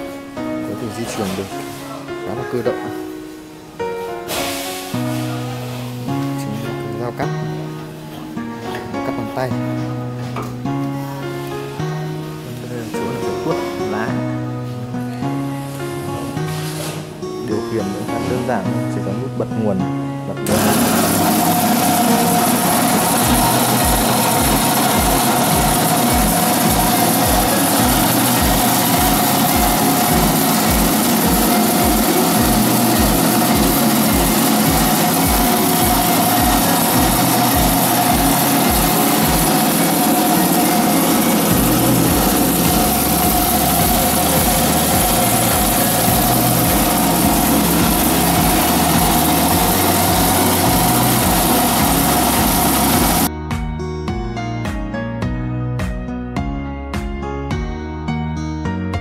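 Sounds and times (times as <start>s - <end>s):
machine motor whirring: 20.4s - 53.3s.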